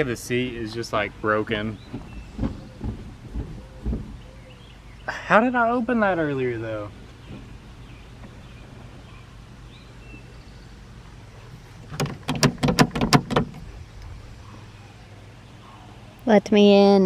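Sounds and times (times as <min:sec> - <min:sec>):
car door handle clacking: 0:11.9 - 0:13.6.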